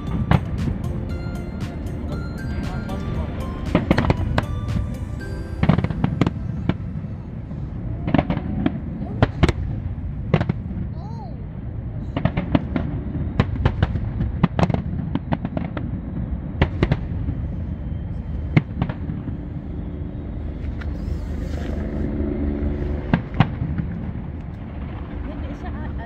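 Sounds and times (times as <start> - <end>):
fireworks bangs and cracks: 0.0 - 17.5, 18.5 - 19.4, 23.0 - 25.4
rumble of distant explosions: 0.0 - 20.6, 21.8 - 26.0.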